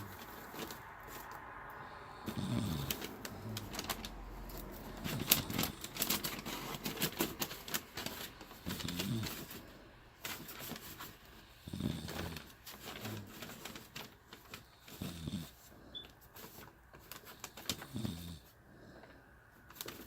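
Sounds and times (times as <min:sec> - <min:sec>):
woman snoring: 0:02.0 - 0:03.7, 0:08.6 - 0:09.3, 0:11.6 - 0:12.4, 0:17.8 - 0:18.4.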